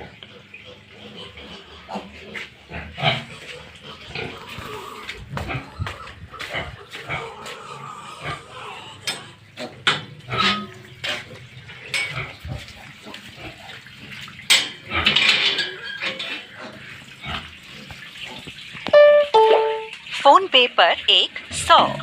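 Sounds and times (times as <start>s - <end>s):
pig crying: 0.0s - 10.8s
pigs grunting: 0.0s - 18.6s, 21.6s - 22.0s.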